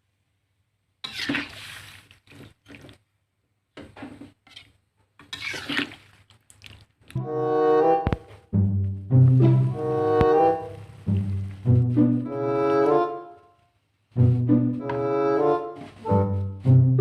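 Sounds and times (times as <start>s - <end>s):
liquid food stirred in pot: 1.0s - 3.1s, 3.8s - 7.2s
background music with bowed strings: 7.2s - 13.4s, 14.1s - 17.0s.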